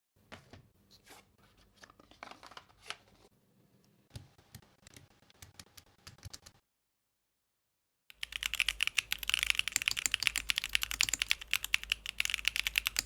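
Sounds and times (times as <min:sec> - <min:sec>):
keyboard switches clicking: 0:08.1 - 0:13.0.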